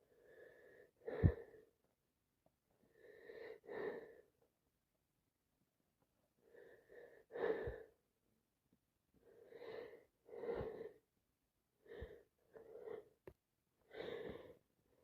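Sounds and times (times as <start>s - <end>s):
person taking wheezy breaths: 0.0s - 1.7s, 6.4s - 8.0s, 9.2s - 11.0s, 13.8s - 14.7s.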